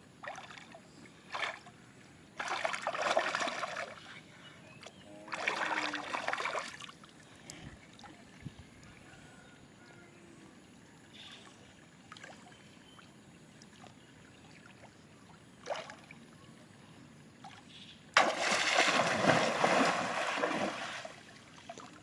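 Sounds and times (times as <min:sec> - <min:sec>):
water splashing: 0:02.4 - 0:04.0, 0:05.3 - 0:07.0, 0:18.2 - 0:22.0.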